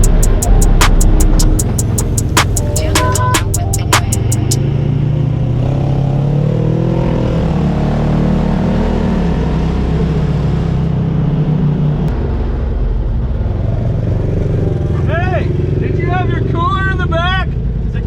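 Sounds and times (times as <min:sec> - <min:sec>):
utility vehicle engine running: 0:00.0 - 0:06.9.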